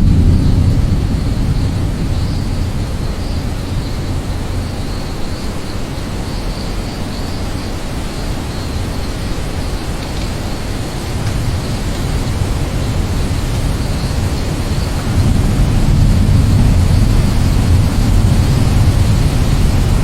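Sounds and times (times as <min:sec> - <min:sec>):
deep rumble: 0:00.0 - 0:05.9, 0:11.2 - 0:20.0
heavy rain: 0:00.0 - 0:20.0.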